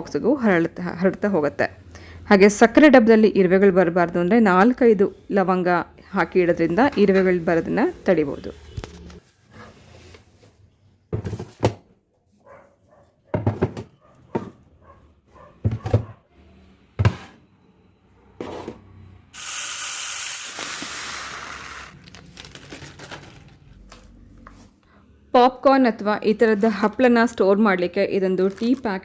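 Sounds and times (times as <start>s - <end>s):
storage containers knocked and set down: 13.4s - 14.6s.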